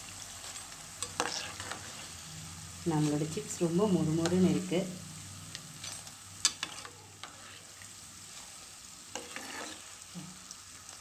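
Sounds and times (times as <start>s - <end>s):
dough chips sizzling in oil: 0.0s - 11.0s.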